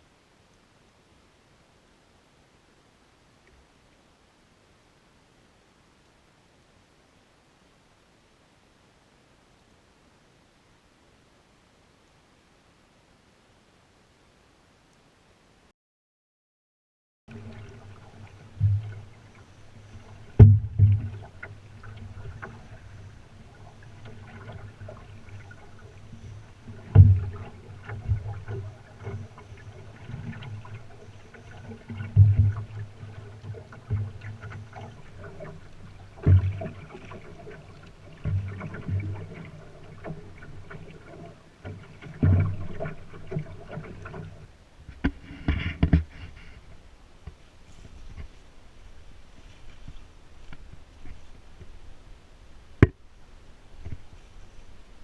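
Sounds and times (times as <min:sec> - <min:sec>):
faint water wash: 0:17.3 - 0:55.0
paddle knocks against canoe hull: 0:20.3 - 0:22.6, 0:52.8 - 0:53.0.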